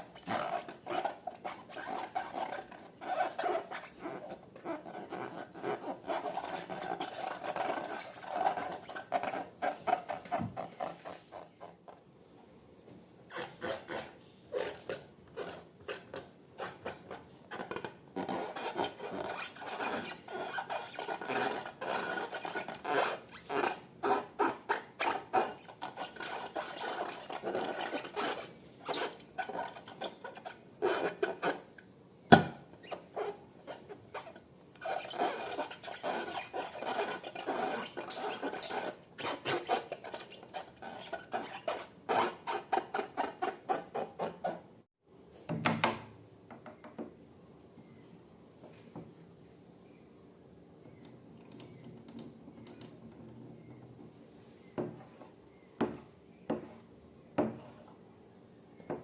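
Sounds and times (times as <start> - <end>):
hands stirring slime: 13.3 - 31.8, 33.7 - 43.9.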